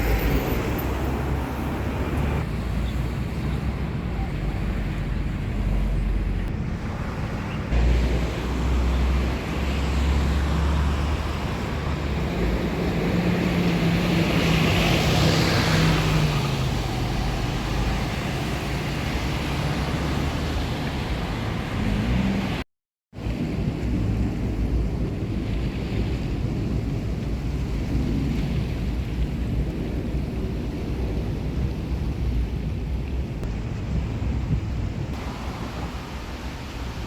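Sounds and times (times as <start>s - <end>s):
strong wind buffeting microphone: 23.2s - 37.0s.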